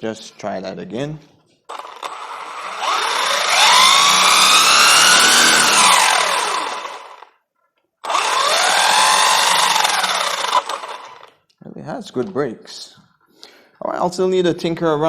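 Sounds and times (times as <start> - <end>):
electric motor whining: 1.7 - 7.3, 8.0 - 11.3.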